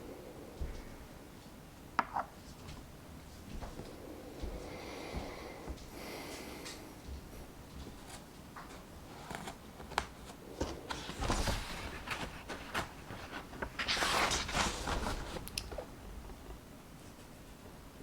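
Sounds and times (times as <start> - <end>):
book pages rustling: 7.8 - 17.4.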